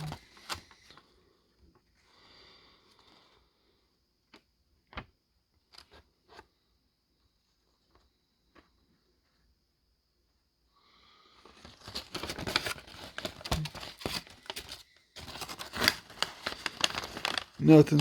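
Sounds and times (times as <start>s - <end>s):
paper rustling: 0.0s - 1.0s, 11.5s - 18.0s.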